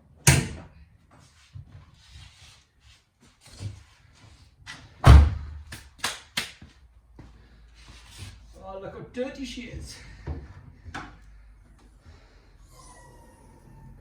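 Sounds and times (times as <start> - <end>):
heavy thud: 5.0 - 5.6.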